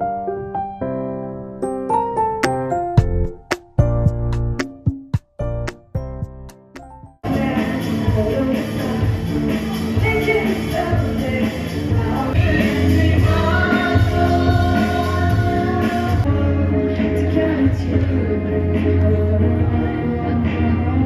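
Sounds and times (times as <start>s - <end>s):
music with singing: 7.2s - 21.0s.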